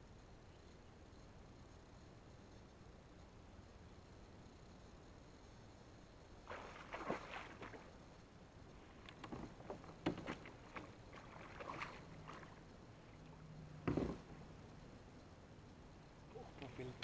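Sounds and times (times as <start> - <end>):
water splashing in a river: 6.4 - 8.0, 10.1 - 12.6.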